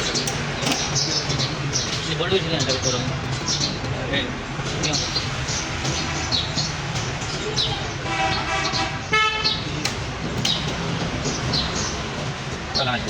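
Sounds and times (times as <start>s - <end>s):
vehicle horn toots: 8.0s - 9.7s.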